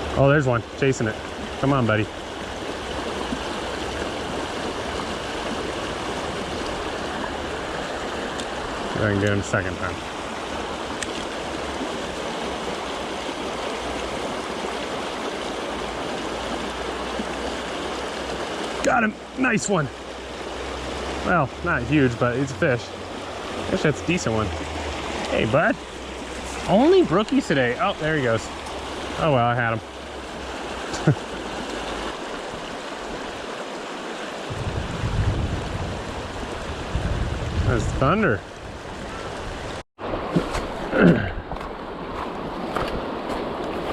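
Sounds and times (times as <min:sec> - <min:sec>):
water rushing over rocks: 0:00.0 - 0:43.9
thunder rumbling: 0:34.5 - 0:39.4.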